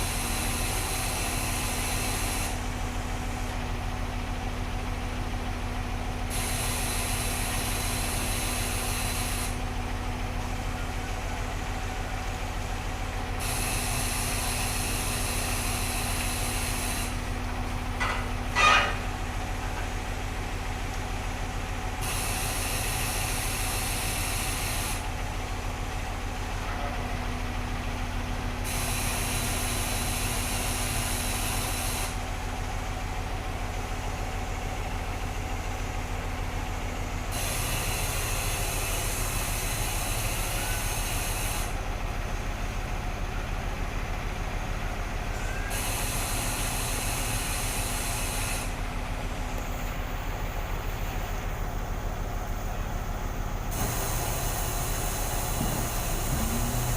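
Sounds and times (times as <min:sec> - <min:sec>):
diesel engine running: 0:00.0 - 0:56.9
loud hissing: 0:53.8 - 0:56.9.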